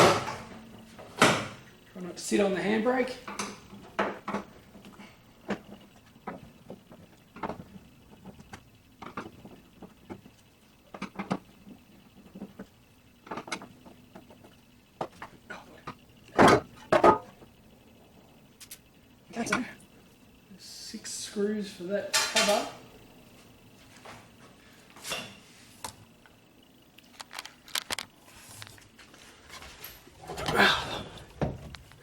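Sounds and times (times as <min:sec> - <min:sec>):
screwdriver and metal parts clicking: 0:27.0 - 0:28.1.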